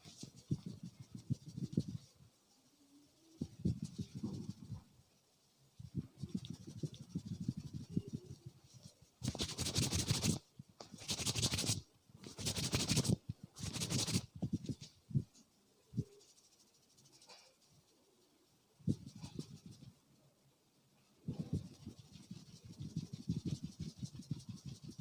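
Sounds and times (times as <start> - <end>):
scratchy rubbing through hair: 0.0 - 4.9, 5.7 - 20.0, 21.3 - 25.0.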